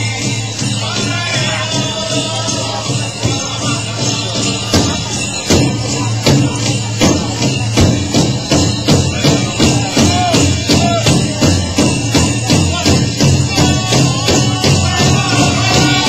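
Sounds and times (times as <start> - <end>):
group singing: 0.0 - 5.3, 12.7 - 16.0
large drum steady beat: 0.0 - 16.0
metal jingles jingling: 0.0 - 16.0.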